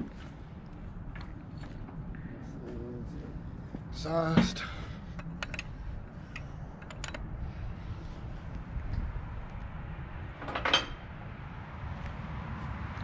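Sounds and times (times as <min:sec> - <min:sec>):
low steady rumble: 0:00.0 - 0:13.0
metal engine parts clicking: 0:05.1 - 0:07.3.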